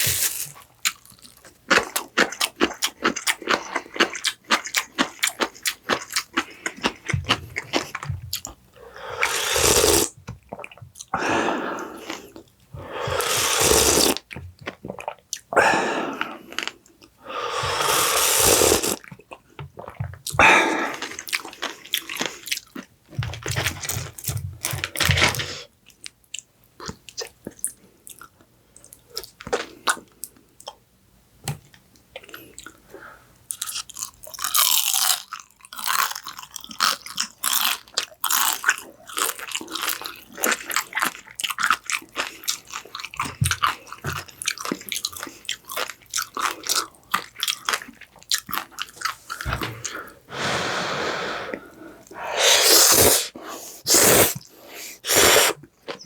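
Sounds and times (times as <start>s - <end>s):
person biting and crunchy chewing: 9.2s - 10.7s, 51.4s - 56.0s
mouth clicks: 53.9s - 56.0s.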